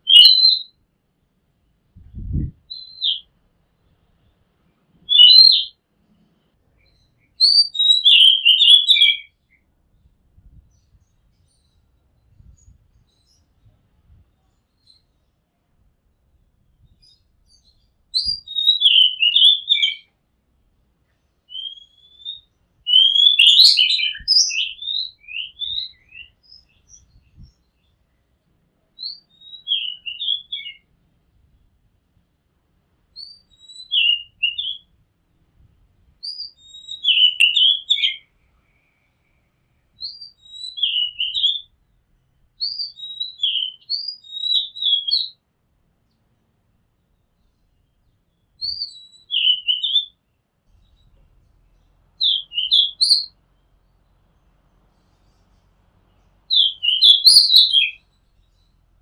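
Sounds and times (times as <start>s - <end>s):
bird singing: 0.0s - 0.7s, 2.7s - 3.3s, 5.1s - 5.8s, 6.8s - 9.6s, 16.6s - 20.1s, 21.5s - 28.3s, 29.0s - 30.9s, 33.2s - 34.9s, 36.2s - 38.3s, 40.0s - 41.8s, 42.6s - 45.4s, 47.0s - 59.0s.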